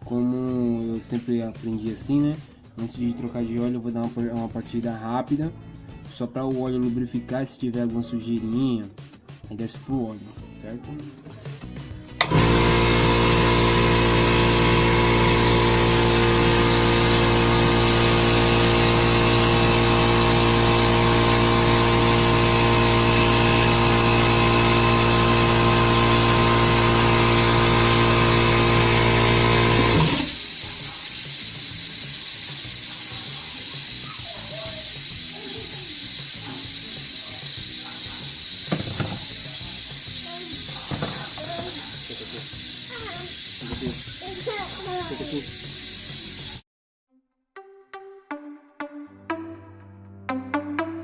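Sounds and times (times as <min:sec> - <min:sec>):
air compressor running: 0:12.2 - 0:46.6
steady hiss: 0:30.6 - 0:46.5.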